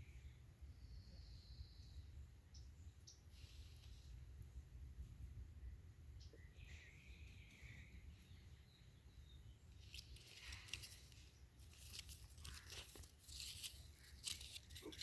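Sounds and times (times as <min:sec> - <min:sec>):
paper tag rustling and crinkling: 0:09.8 - 0:15.0.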